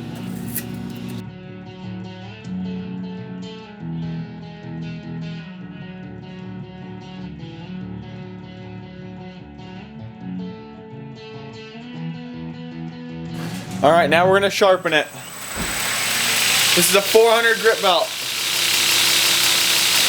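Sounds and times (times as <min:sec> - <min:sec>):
guitar music: 0:13.4 - 0:15.2.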